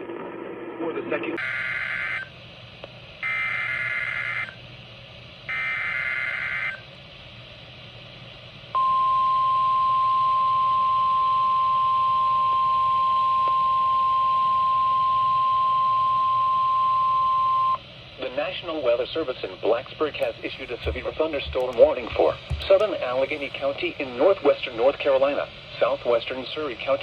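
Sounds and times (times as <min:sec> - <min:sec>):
steady attention tone: 0:20.2 - 0:23.5.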